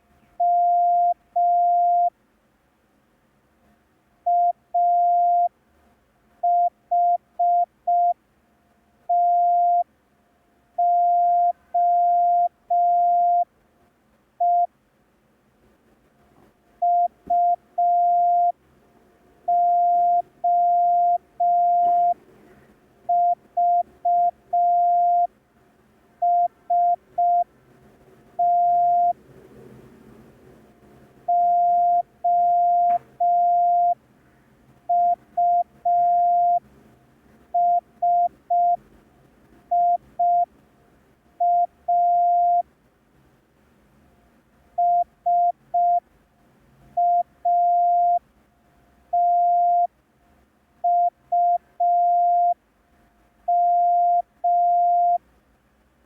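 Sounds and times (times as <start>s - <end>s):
morse code tone: 0.4s - 2.1s, 4.3s - 5.5s, 9.1s - 9.8s, 10.8s - 13.5s, 16.8s - 18.6s, 19.5s - 22.2s, 23.1s - 25.3s, 26.2s - 27.5s, 28.4s - 29.2s, 31.3s - 34.0s, 34.9s - 36.6s, 37.6s - 38.8s, 39.7s - 40.5s, 41.4s - 42.6s, 44.8s - 46.0s, 47.0s - 48.2s, 49.2s - 49.9s, 50.9s - 52.6s, 53.5s - 55.2s.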